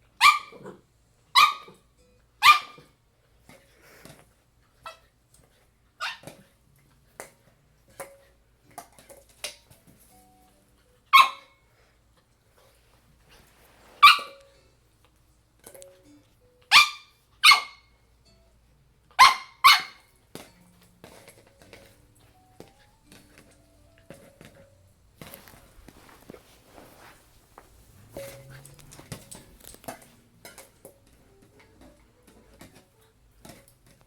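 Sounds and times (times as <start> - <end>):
puppy yipping: 0.2 - 0.7, 1.3 - 1.8, 2.4 - 2.9, 6.0 - 6.4, 11.0 - 11.6, 14.0 - 14.4, 16.7 - 17.9, 19.1 - 20.1.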